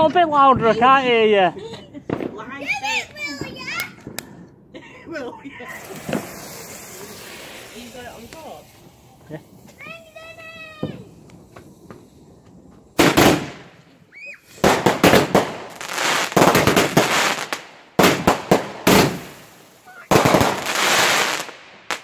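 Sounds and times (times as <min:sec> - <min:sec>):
fireworks banging: 0:00.0 - 0:04.8, 0:05.4 - 0:22.0
crackling bursts: 0:05.7 - 0:22.0
crackling hiss: 0:05.7 - 0:22.0.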